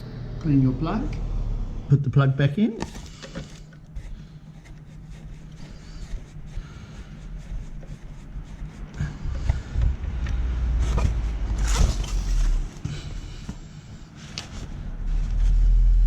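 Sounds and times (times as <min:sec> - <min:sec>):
low vehicle-like rumble: 0:00.0 - 0:02.0, 0:08.9 - 0:13.9, 0:14.6 - 0:16.0
faint clicks and scrapes: 0:02.8 - 0:13.6.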